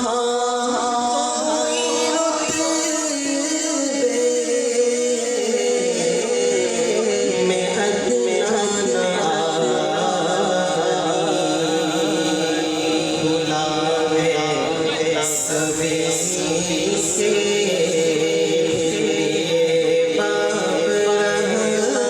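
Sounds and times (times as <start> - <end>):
person singing chanted melody: 0.0 - 22.0.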